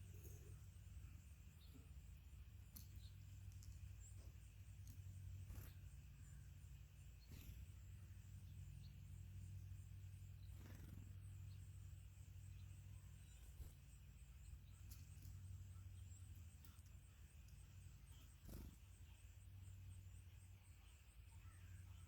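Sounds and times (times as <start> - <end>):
faint low hum: 0.0 - 22.0
small birds chirping: 0.0 - 22.0
faint ticks: 2.6 - 5.8, 14.7 - 19.0.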